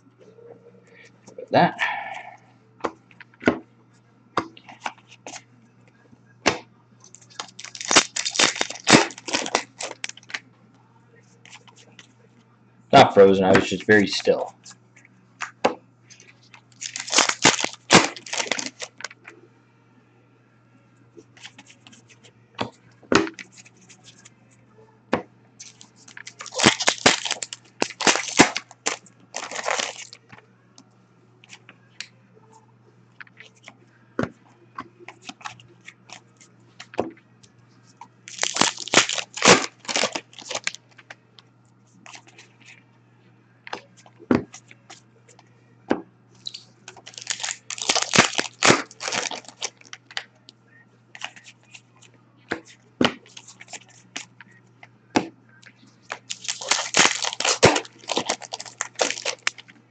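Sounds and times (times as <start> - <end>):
faint low hum: 0.0 - 59.9
foil wrappers tearing: 7.1 - 10.4, 16.2 - 19.1, 25.6 - 30.2, 38.3 - 40.8, 46.4 - 50.2, 56.1 - 59.6.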